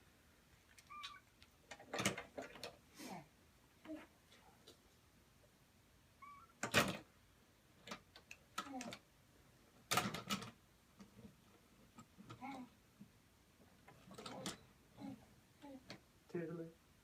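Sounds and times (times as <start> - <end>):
toys clattering together: 6.6 - 7.1, 9.9 - 10.6, 14.0 - 14.6
small child vocal sounds: 8.6 - 9.0, 12.3 - 12.8, 15.0 - 16.0.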